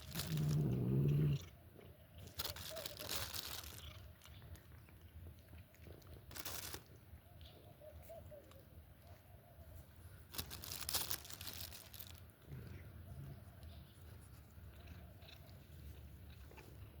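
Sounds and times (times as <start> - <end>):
cat crunching food: 0.0 - 7.2, 14.4 - 16.8.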